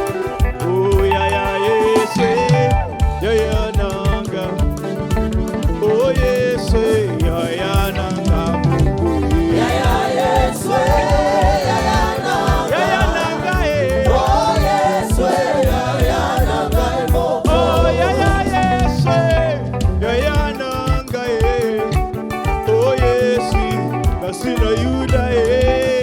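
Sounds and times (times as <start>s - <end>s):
band with steady drum beat: 0.0s - 26.0s
group of voices singing: 0.0s - 26.0s.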